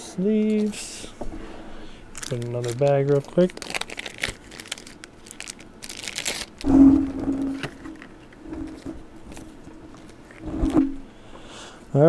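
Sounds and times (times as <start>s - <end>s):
low buzzing hum: 0.0s - 12.0s
plastic crinkling: 2.1s - 6.7s.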